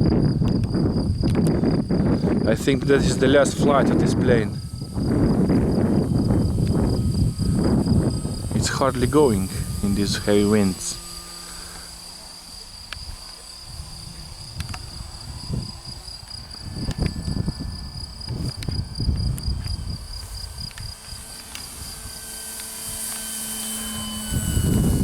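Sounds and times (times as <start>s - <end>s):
insect pulsing trill: 0.0s - 25.0s
model plane motor hum: 0.0s - 25.0s
wind buffeting microphone: 0.0s - 25.0s.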